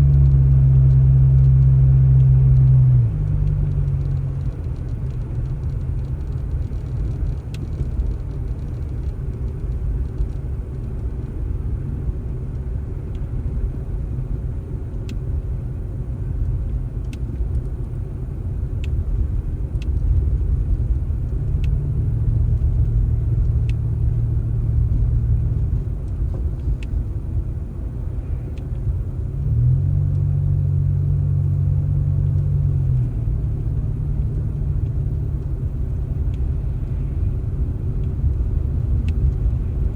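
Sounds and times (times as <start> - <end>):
engine rumbling: 0.0 - 39.9
faint ticks: 0.1 - 11.1.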